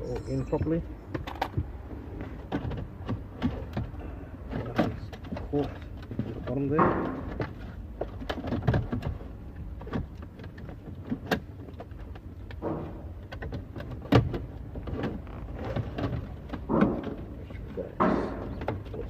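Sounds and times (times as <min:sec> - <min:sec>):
car stereo being handled: 0:00.0 - 0:19.0.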